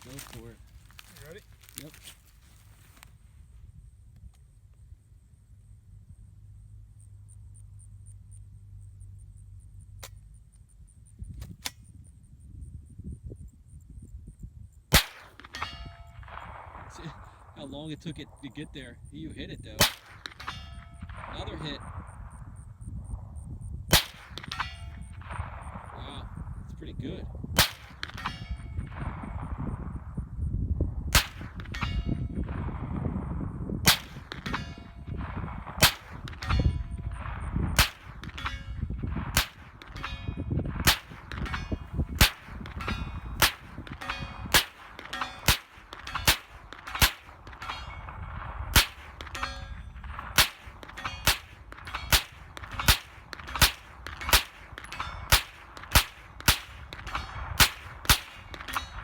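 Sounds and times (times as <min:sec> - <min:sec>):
carbine gunshots: 0:14.9 - 0:18.9, 0:19.7 - 0:22.4, 0:23.9 - 0:29.8, 0:31.1 - 0:59.0
steel target clanging: 0:15.0 - 0:17.3, 0:19.8 - 0:21.8, 0:24.0 - 0:26.2, 0:27.6 - 0:29.0, 0:31.2 - 0:32.4, 0:33.9 - 0:35.2, 0:35.8 - 0:59.0.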